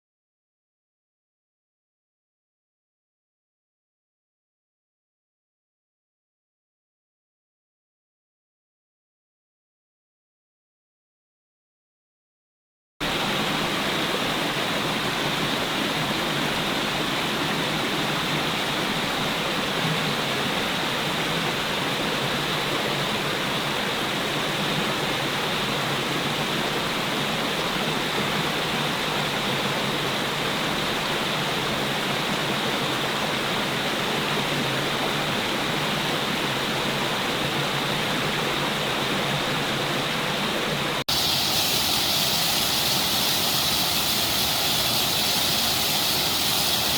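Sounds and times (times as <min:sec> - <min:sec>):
rushing water: 0:13.0 - 0:46.9
hissy sound: 0:41.1 - 0:46.9.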